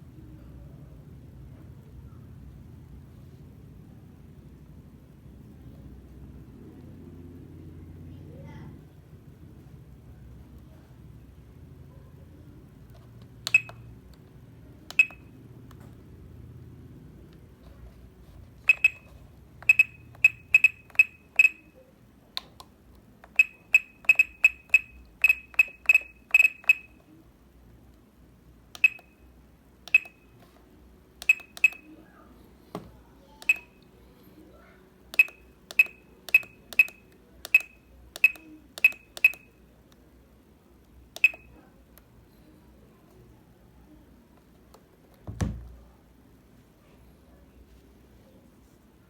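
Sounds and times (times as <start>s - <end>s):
short high key beeps: 13.5s - 13.9s, 14.9s - 15.3s, 18.6s - 21.8s, 23.3s - 27.0s, 28.8s - 29.3s, 29.9s - 30.4s, 31.2s - 32.0s, 33.4s - 33.8s, 35.2s - 39.6s, 41.2s - 41.6s.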